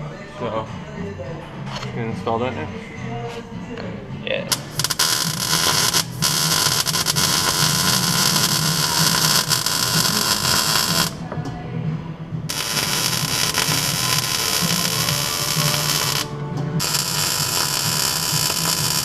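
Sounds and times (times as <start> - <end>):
power tool or welding noise: 4.5 - 11.2, 12.5 - 19.0.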